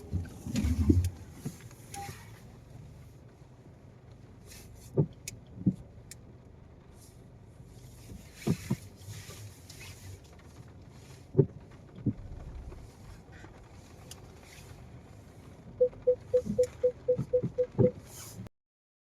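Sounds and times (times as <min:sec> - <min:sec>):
road rumble inside car: 0:00.0 - 0:18.5
short electronic beeps: 0:15.8 - 0:18.0.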